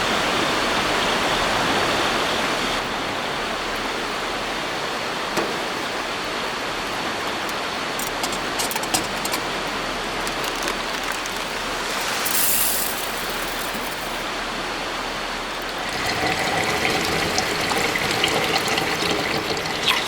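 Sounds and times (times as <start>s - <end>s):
river rushing: 9.4s - 20.0s.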